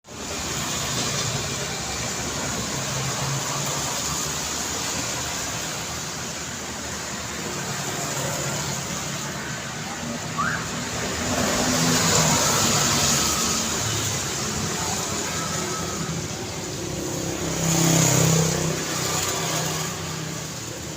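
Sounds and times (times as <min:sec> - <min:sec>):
city road traffic: 0:00.0 - 0:20.9
vehicle passing: 0:07.0 - 0:20.9.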